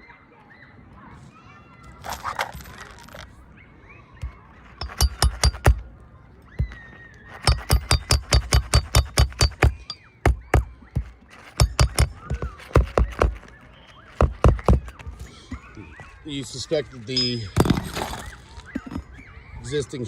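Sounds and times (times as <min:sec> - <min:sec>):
hammer driving nails: 0:04.2 - 0:05.8, 0:06.6 - 0:15.1.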